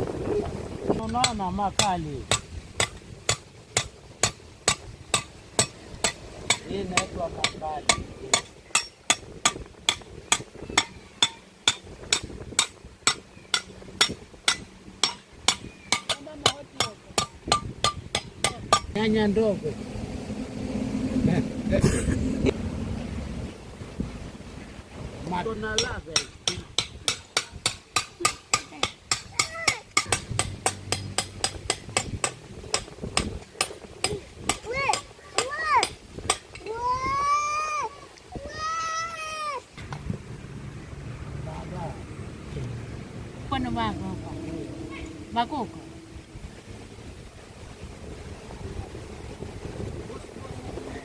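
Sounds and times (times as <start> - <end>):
sharp metallic knocks: 1.0 - 19.1, 25.7 - 36.7, 43.5 - 47.0.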